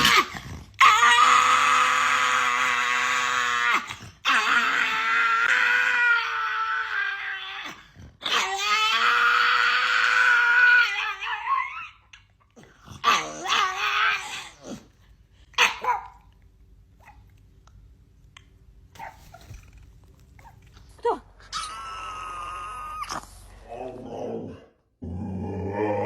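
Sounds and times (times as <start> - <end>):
dog howling whines: 0.0 - 12.0, 21.5 - 23.2.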